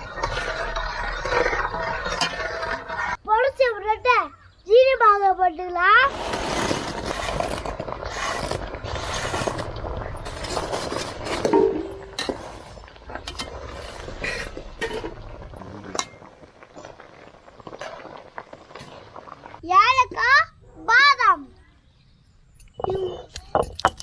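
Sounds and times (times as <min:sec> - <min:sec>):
metal spoon scraping a pan: 0:00.0 - 0:03.2, 0:06.1 - 0:16.4.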